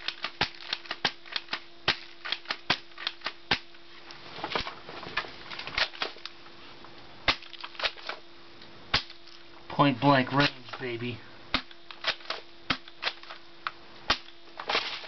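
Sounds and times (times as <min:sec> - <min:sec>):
loud crack: 0:07.3 - 0:08.2, 0:08.9 - 0:09.2, 0:14.1 - 0:15.0.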